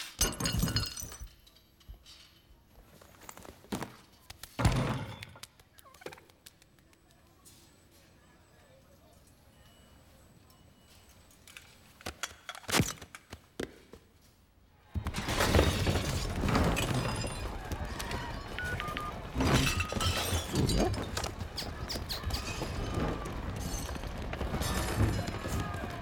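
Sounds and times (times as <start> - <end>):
crashing and shattering: 0.1 - 1.6, 14.9 - 26.0.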